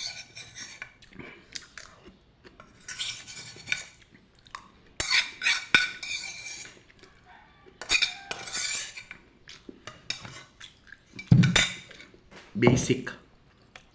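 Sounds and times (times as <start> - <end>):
metal utensil scraping a pan: 0.0 - 1.0, 2.6 - 4.0, 5.0 - 6.9, 7.8 - 12.2.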